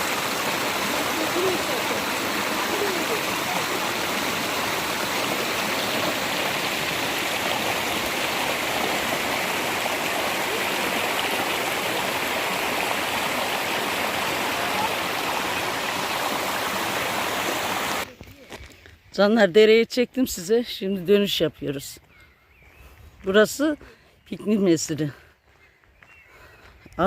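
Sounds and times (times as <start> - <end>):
stream flowing: 0.0 - 18.1.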